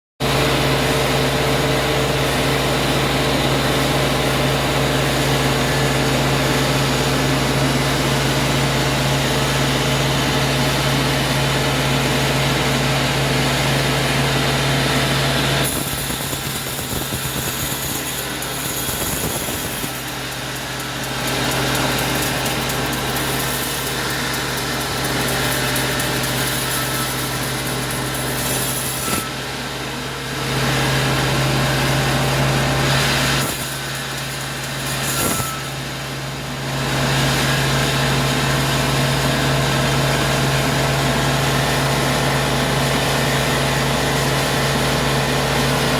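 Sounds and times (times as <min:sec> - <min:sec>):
sawmill machinery humming: 0:00.2 - 0:45.9
hissy machine noise: 0:14.3 - 0:36.5.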